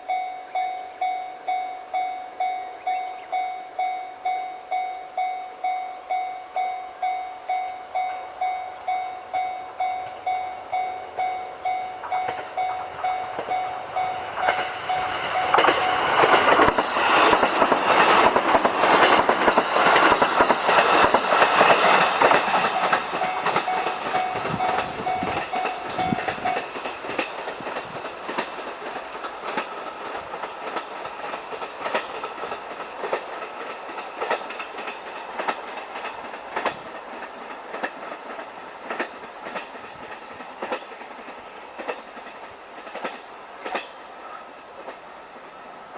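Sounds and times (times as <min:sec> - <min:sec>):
level crossing bell ringing: 0:00.0 - 0:16.4, 0:22.7 - 0:26.6
train wheels clattering: 0:00.0 - 0:45.6.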